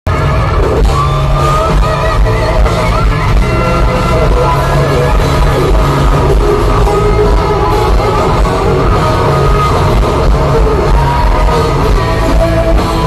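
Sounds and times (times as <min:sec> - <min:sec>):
hard rock band playing live: 0:00.1 - 0:13.0.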